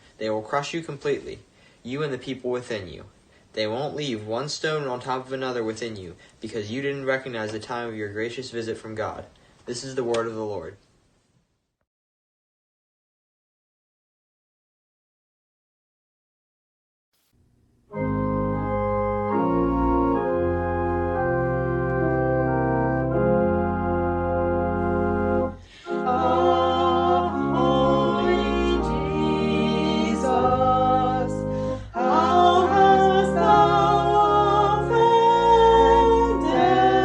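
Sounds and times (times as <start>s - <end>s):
organ playing sustained chords: 17.9s - 37.0s
person singing: 25.8s - 37.0s.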